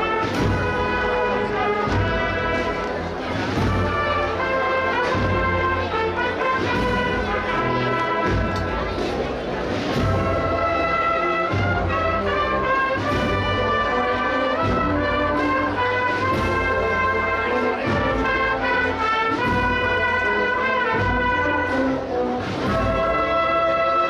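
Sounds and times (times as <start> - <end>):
brass band playing a march: 0.0 - 24.0.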